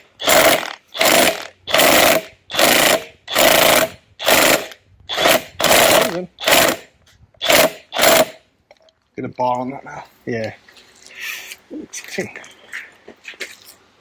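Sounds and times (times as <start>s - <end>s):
impact wrench bursts: 0.0s - 8.4s.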